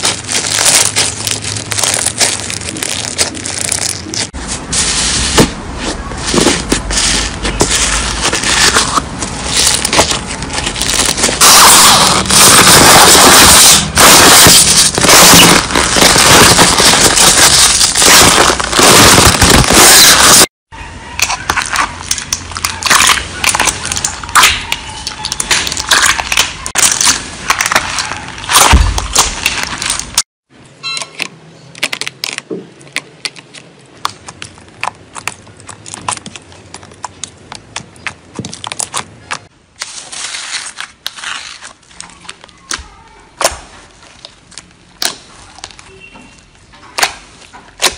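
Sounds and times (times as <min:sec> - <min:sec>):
slime squeezed crackling and popping: 0:00.0 - 0:04.4, 0:06.8 - 0:20.5, 0:21.2 - 0:30.2.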